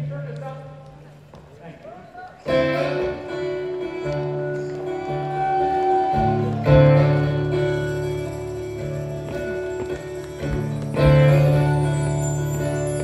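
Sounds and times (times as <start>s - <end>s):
guitar chords strummed: 2.5s - 13.0s.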